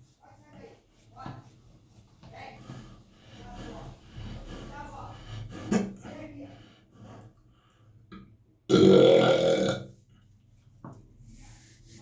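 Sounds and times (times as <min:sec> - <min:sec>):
person burping loudly: 0:08.7 - 0:09.9.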